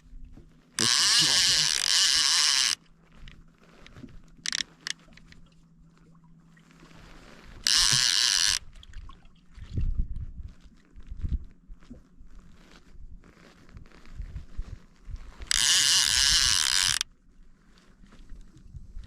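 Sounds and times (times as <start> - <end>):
fishing reel drag buzzing: 0.8 - 2.9, 4.4 - 5.0, 7.6 - 8.7, 15.4 - 17.1.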